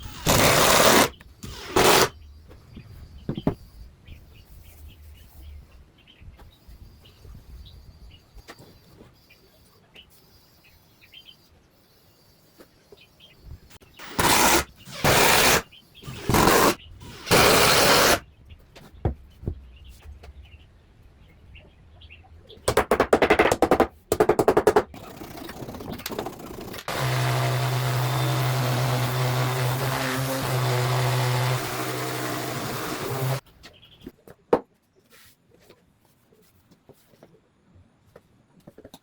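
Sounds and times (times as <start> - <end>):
woodworking tool bursts: 0.0 - 2.1, 13.8 - 18.2, 24.9 - 33.4
machine humming: 26.8 - 33.4.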